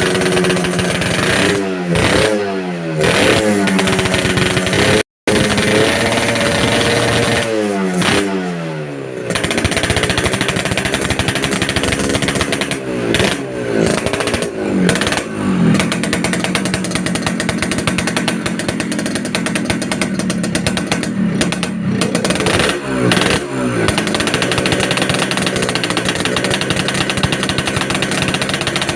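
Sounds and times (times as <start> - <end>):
two-stroke motorcycle engine revving: 0.0 - 28.9.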